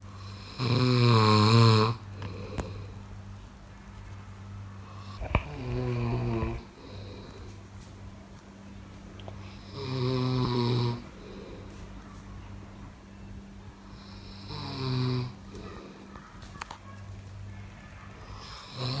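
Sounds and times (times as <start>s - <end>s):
steady low hum: 0.0s - 19.0s
person snoring: 0.2s - 3.0s, 4.9s - 7.6s, 9.5s - 11.7s, 18.4s - 19.0s.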